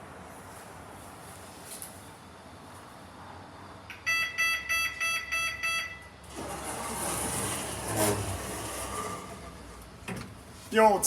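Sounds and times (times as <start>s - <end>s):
lift electronic beeps: 3.9s - 6.1s
rushing mechanical noise: 6.3s - 9.8s.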